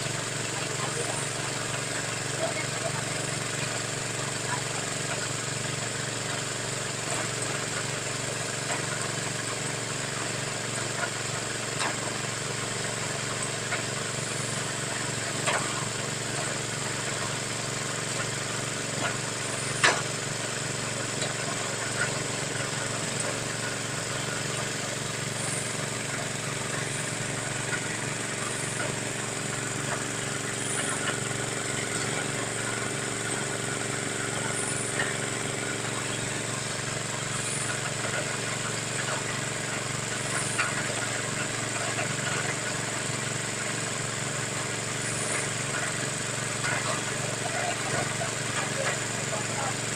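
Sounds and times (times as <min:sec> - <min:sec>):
drilling machine engine running: 0:00.0 - 0:49.9.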